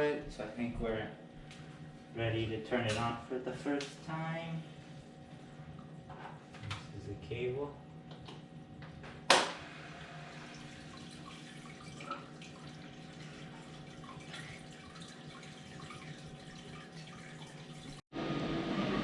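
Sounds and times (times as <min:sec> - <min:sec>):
filter pump hum: 0:00.0 - 0:19.0
water trickling and dripping: 0:10.1 - 0:18.0.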